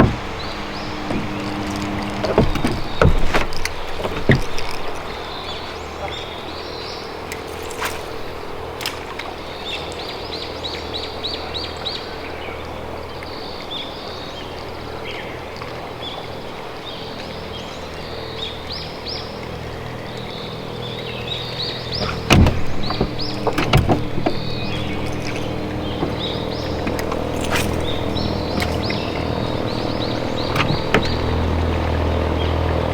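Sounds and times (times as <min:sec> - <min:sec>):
birds chirping and calling: 0:16.0 - 0:32.9
steady low hum: 0:16.9 - 0:32.9.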